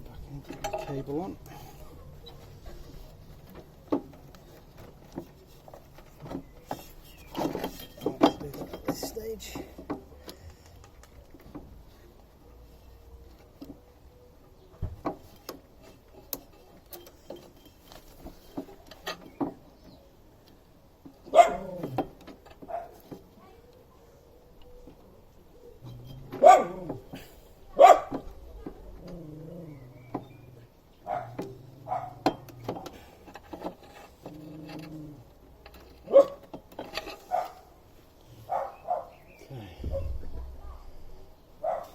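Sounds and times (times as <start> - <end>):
metal parts clicking and knocking: 0.1 - 1.5, 2.2 - 11.7, 15.3 - 19.6, 32.2 - 37.6
steady low hum: 39.5 - 41.9.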